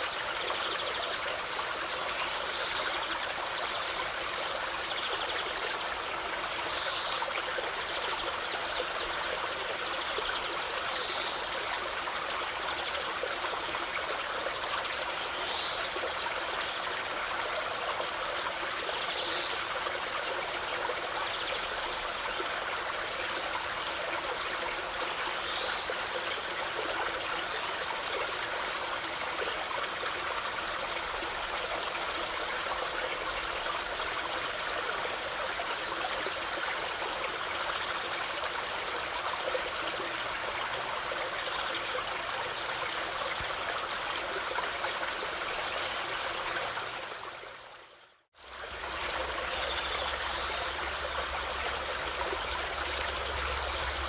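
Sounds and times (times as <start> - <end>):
river water flowing over stones: 0.0 - 47.8, 48.4 - 54.0.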